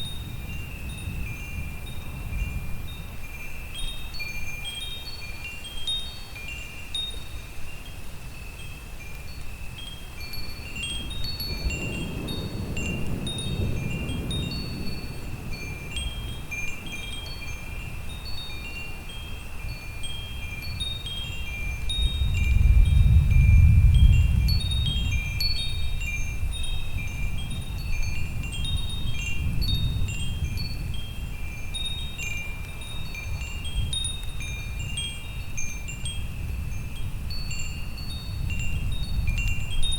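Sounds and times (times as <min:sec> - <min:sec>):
wind chimes ringing: 0:00.0 - 0:39.9
low storm background: 0:10.7 - 0:18.0.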